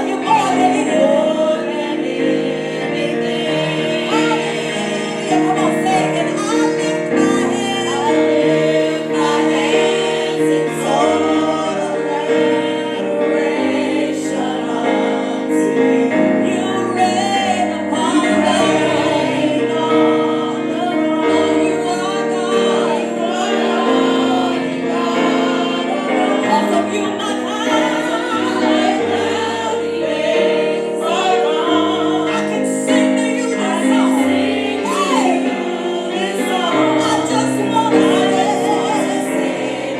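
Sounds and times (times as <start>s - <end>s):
gospel choir singing: 0.0s - 39.9s.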